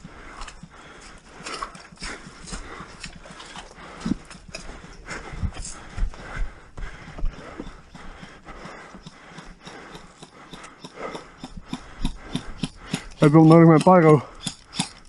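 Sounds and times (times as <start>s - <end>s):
footsteps: 0.0s - 15.0s.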